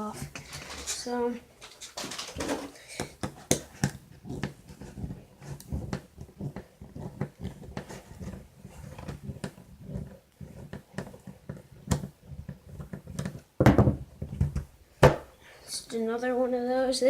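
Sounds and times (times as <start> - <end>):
small parts clicking and knocking: 0.3 - 4.5.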